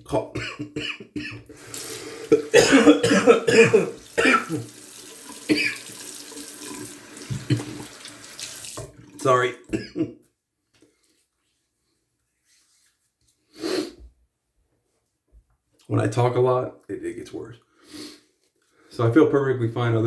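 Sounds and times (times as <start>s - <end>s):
man coughing: 0.3s - 1.4s, 2.3s - 4.7s, 5.5s - 5.8s, 9.7s - 10.2s
tap running into a sink: 4.0s - 9.2s.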